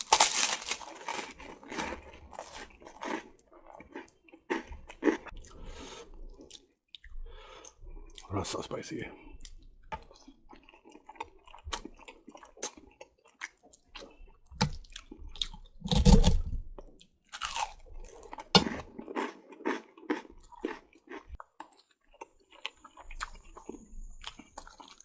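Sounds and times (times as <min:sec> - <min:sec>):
wet chewing and lip smacks: 0:09.3 - 0:15.8, 0:16.8 - 0:25.0.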